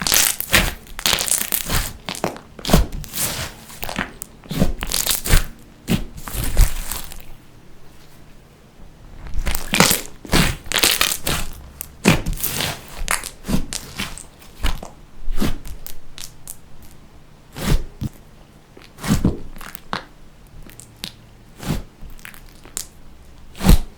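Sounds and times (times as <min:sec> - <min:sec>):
slime crackling and popping: 0:00.0 - 0:07.3, 0:09.3 - 0:15.0, 0:18.8 - 0:21.2, 0:22.1 - 0:23.9.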